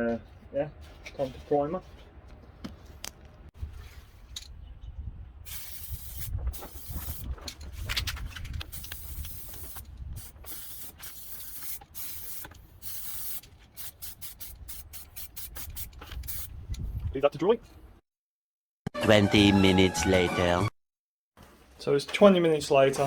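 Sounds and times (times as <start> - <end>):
aerosol can spraying: 5.5 - 7.3, 8.7 - 16.5.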